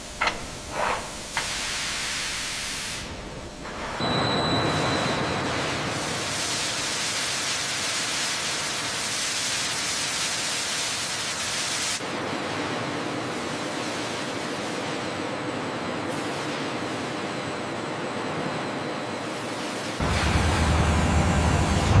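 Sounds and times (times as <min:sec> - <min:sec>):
duller lower noise: 0:20.0 - 0:22.0
steady rushing noise: 0:20.0 - 0:22.0.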